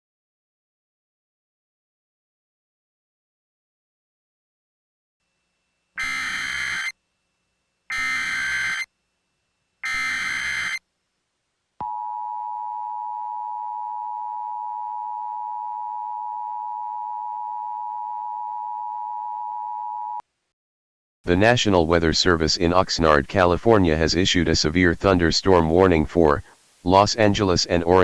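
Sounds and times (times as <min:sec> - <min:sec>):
data header bursts: 0:06.0 - 0:06.9, 0:07.9 - 0:08.9, 0:09.8 - 0:10.8
two-tone attention signal: 0:06.0 - 0:06.9, 0:07.9 - 0:08.9, 0:09.8 - 0:10.8.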